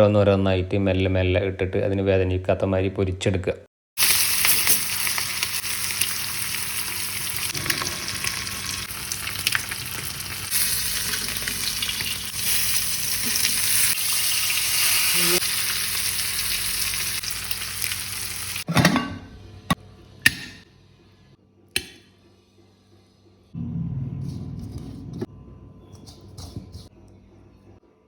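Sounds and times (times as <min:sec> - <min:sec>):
fish sizzling in hot oil: 0:04.0 - 0:18.6.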